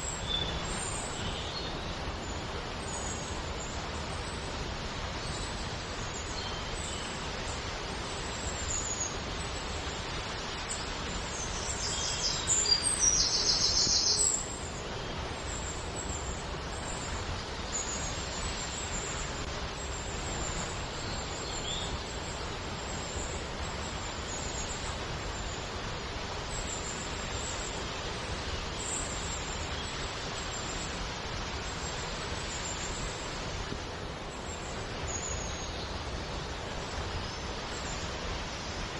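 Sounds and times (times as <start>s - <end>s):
small birds chirping: 8.3s - 22.2s.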